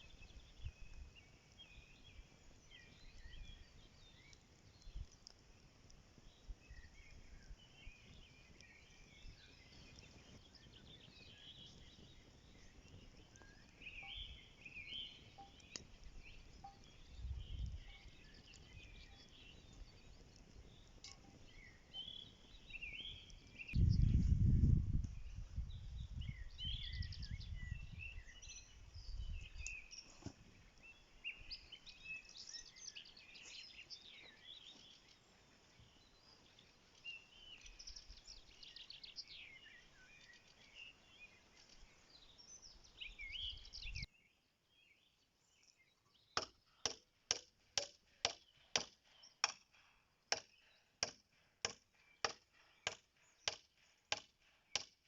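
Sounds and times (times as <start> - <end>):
small birds chirping: 0.0 - 55.0
sharp knocks: 46.4 - 49.6.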